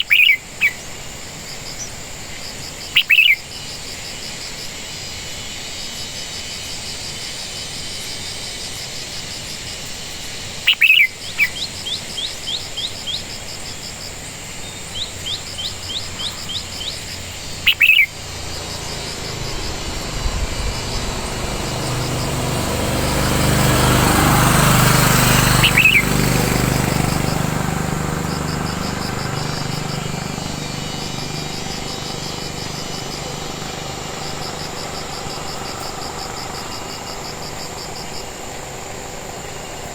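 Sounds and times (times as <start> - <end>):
quick rising bird chirps: 0.0 - 0.8, 14.6 - 38.2
engine: 0.0 - 39.9
insect chirping: 0.0 - 39.9.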